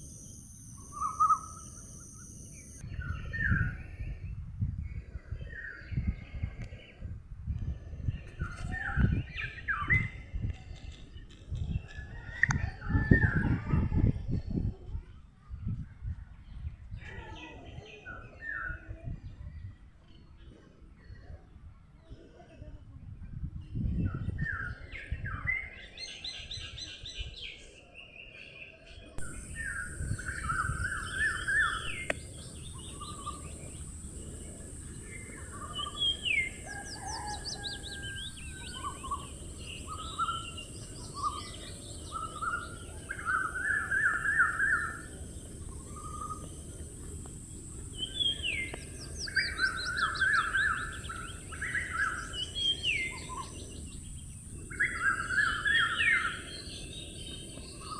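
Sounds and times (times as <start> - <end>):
steady high hiss: 0.0 - 2.8, 29.2 - 57.9
birds chirping and trilling: 0.0 - 7.1, 24.3 - 57.9.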